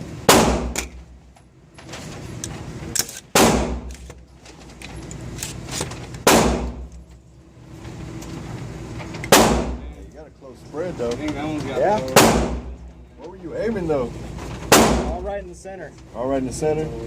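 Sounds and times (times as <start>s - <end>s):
fainter gunshots: 6.2s - 6.8s, 9.3s - 9.9s, 12.2s - 12.7s, 14.7s - 15.2s
gunshots with ringing tail: 6.3s - 6.8s, 9.3s - 9.8s, 12.2s - 12.8s, 14.7s - 15.1s.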